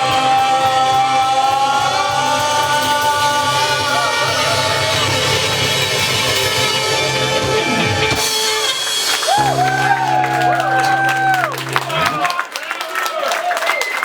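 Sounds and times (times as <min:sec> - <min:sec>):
live band holding final chord: 0:00.0 - 0:12.6
high held note: 0:09.3 - 0:12.4.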